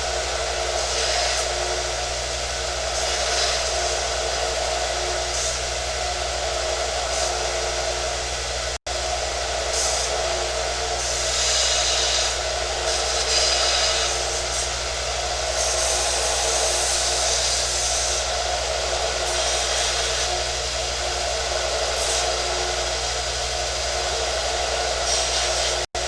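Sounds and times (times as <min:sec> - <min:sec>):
belt sander running: 0:00.0 - 0:26.0
metal hissing on sanding belt: 0:11.0 - 0:14.8, 0:15.4 - 0:20.8, 0:21.9 - 0:22.8, 0:24.6 - 0:25.9.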